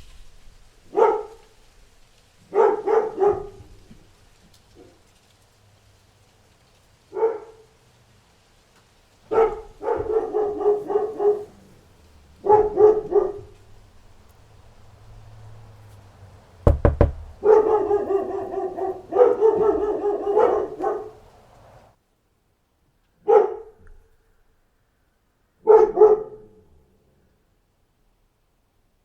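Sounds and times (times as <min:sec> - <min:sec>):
dog barking: 0:00.9 - 0:01.6, 0:02.4 - 0:03.9, 0:07.1 - 0:07.8, 0:09.3 - 0:11.8, 0:12.4 - 0:13.8, 0:17.4 - 0:21.2, 0:23.2 - 0:24.1, 0:25.6 - 0:26.7
sharp knocks: 0:16.7 - 0:17.8.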